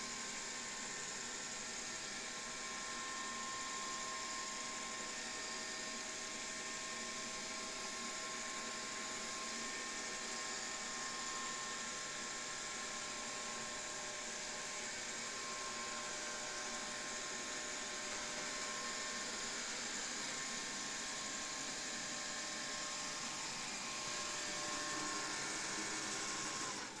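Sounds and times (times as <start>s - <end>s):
robot vacuum whirring: 16.6s - 27.0s.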